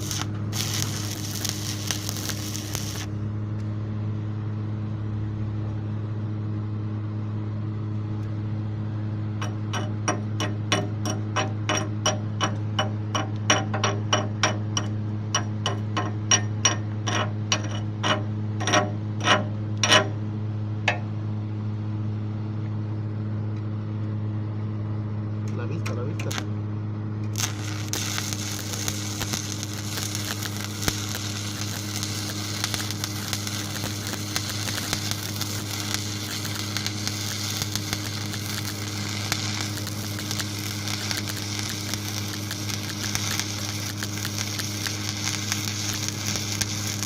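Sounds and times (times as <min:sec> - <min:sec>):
low electrical hum: 0:00.0 - 0:47.0
chipping hammer tapping metal: 0:09.4 - 0:20.2.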